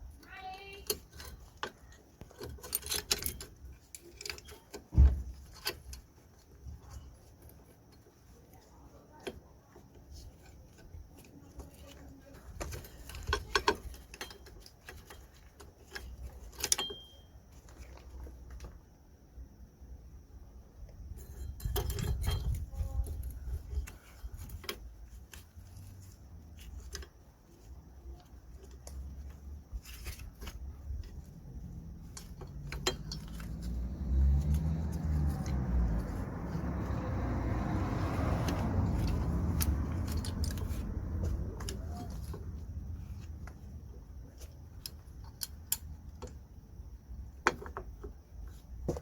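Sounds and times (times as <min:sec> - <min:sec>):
metal clinks and rattles: 0:00.2 - 0:08.1, 0:10.3 - 0:18.6, 0:21.1 - 0:27.6, 0:28.2 - 0:43.5
rushing rumble: 0:29.7 - 0:43.7.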